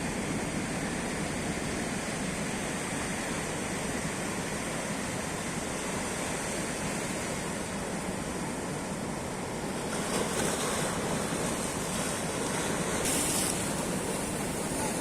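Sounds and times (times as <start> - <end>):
waves washing onto shore: 0.0 - 15.0.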